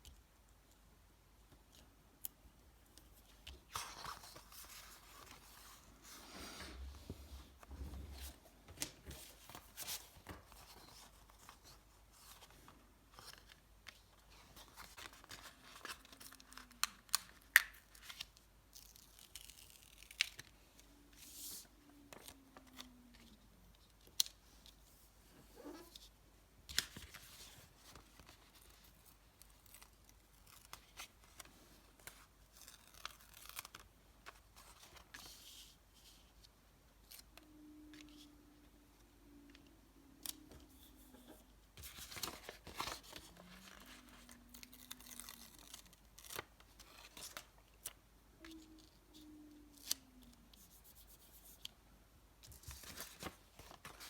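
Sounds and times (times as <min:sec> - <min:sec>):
paper rustling and crinkling: 0:03.2 - 0:23.4, 0:26.7 - 0:37.3, 0:40.5 - 0:49.2, 0:52.5 - 0:54.0.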